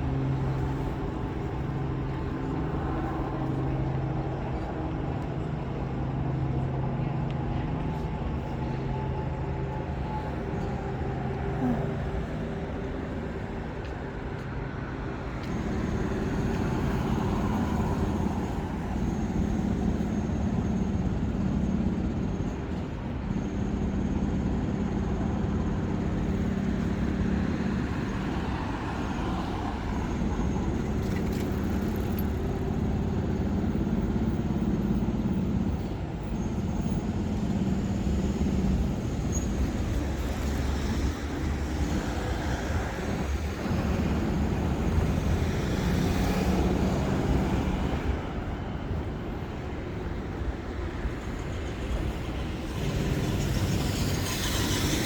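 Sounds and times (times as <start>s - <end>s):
motor vehicles passing: 25.6s - 55.0s.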